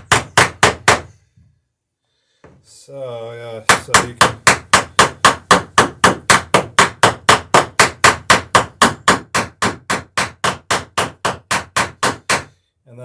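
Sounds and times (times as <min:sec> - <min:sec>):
hammer striking rivets: 0:03.7 - 0:12.5.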